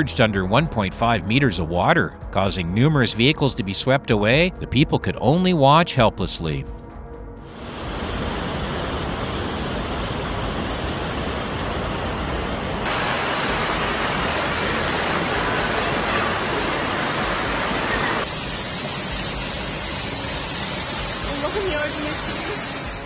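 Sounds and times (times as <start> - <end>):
rushing floodwater and rain: 7.5 - 18.7.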